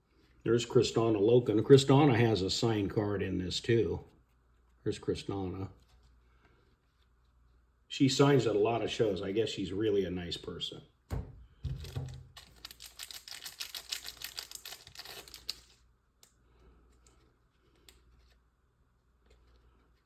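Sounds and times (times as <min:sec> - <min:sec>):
cards clicking and rustling: 0:11.7 - 0:15.8
wrapper tearing and crinkling: 0:11.8 - 0:15.8.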